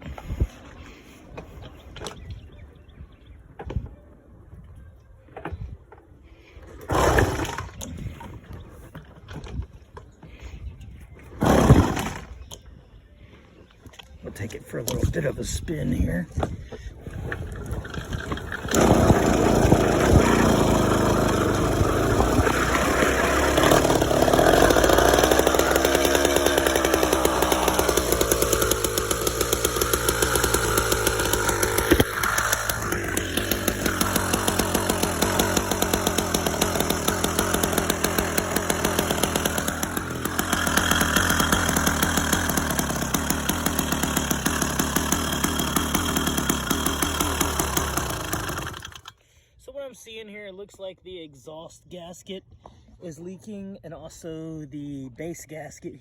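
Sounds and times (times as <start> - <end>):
small gas engine revving: 6.8 - 8.4, 11.3 - 12.4, 17.0 - 49.2.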